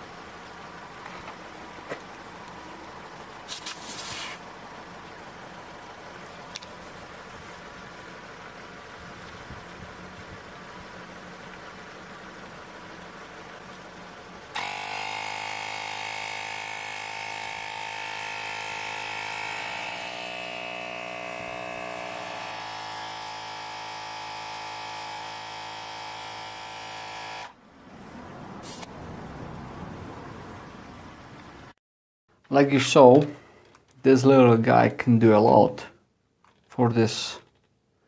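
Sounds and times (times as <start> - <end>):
air compressor buzzing: 14.5 - 27.5.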